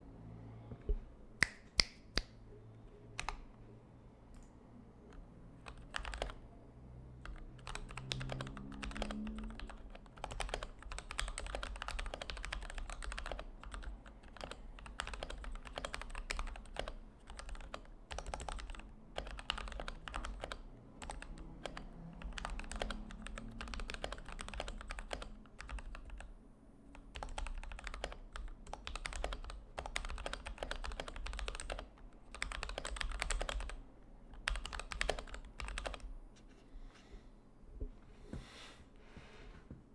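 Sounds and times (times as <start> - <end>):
mechanical keyboard typing: 3.2 - 3.4, 5.6 - 6.4, 7.2 - 26.3, 26.9 - 36.1.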